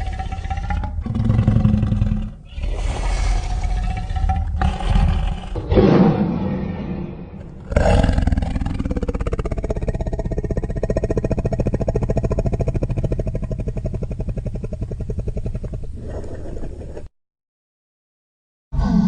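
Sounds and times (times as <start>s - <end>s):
low rattling animal growl: 0.0s - 17.0s.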